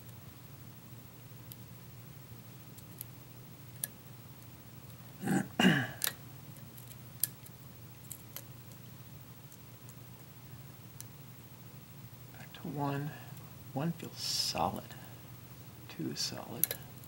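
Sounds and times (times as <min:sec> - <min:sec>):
short low vocal sound: 0:05.2 - 0:06.0.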